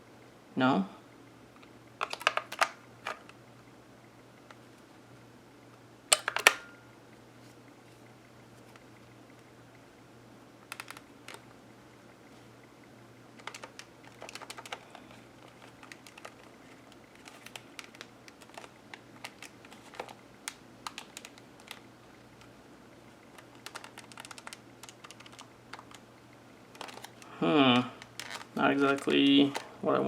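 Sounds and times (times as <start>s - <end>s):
faint low hum: 0.0s - 30.0s
calculator plastic clicks and taps: 10.7s - 11.4s, 13.4s - 14.8s, 23.4s - 26.0s.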